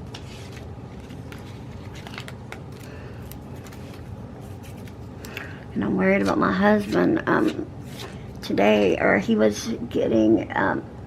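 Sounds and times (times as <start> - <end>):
paper stickers and pages rustling: 0.0 - 8.2
low room hum: 0.0 - 11.0.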